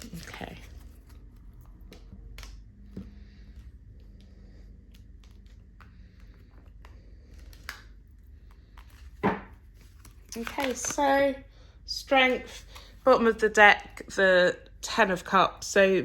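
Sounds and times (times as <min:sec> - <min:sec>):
cards being shuffled: 0:00.0 - 0:11.3.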